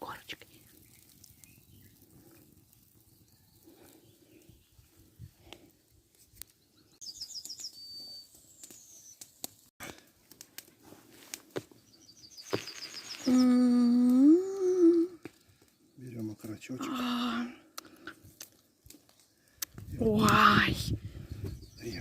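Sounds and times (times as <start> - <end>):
songbird singing trills: 6.6 - 9.2, 11.8 - 15.2, 21.3 - 22.0
person humming: 13.3 - 15.2.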